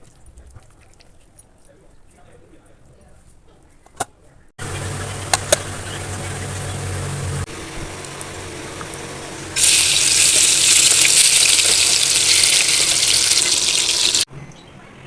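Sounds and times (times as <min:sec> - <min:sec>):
chicken sizzling in hot oil: 0:04.6 - 0:14.3.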